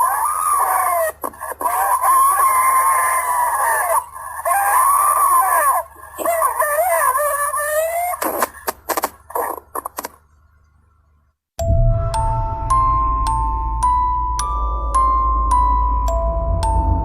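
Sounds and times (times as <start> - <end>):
woman crying out: 0.0 - 8.2
woman screaming over phone: 0.0 - 8.4.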